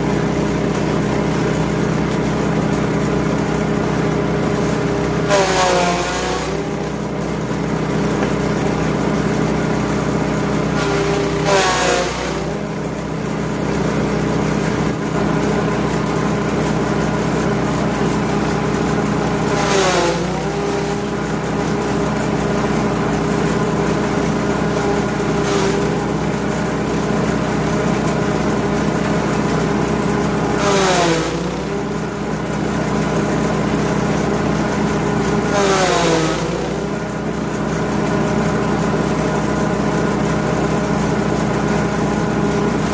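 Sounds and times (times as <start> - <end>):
grass chopper engine running: 0.0 - 42.9.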